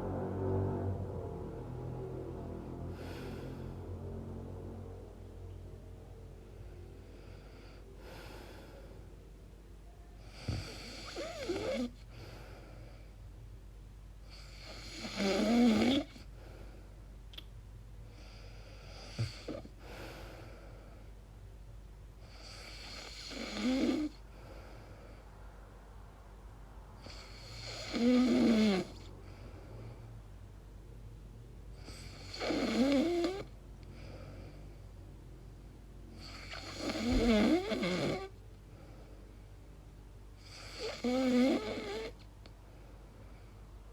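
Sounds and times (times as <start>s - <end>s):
quiet breathing: 1.4s - 43.9s
woman snoring: 2.9s - 4.1s, 10.2s - 12.2s, 14.3s - 16.3s, 18.7s - 20.0s, 22.3s - 24.2s, 27.0s - 29.1s, 31.8s - 33.6s, 36.1s - 38.4s, 40.4s - 42.2s.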